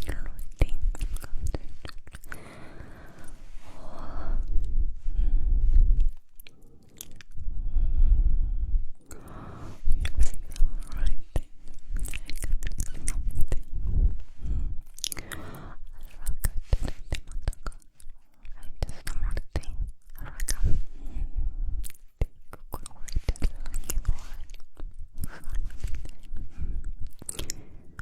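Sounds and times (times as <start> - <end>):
wet mouth clicking and smacking: 0.0 - 2.4, 6.0 - 7.4, 9.9 - 13.8, 14.8 - 20.6, 21.8 - 28.0.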